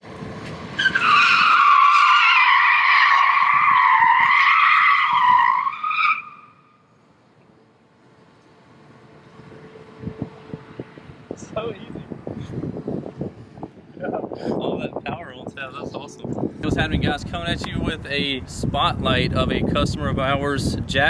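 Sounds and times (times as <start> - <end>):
tyres squealing: 0.8 - 6.6.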